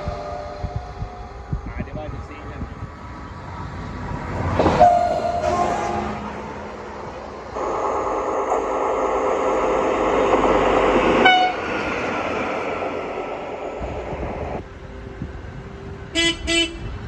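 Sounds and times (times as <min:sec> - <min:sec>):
rail vehicle rumble: 0:00.0 - 0:17.0
air horn blast: 0:11.2 - 0:11.6, 0:16.2 - 0:17.0.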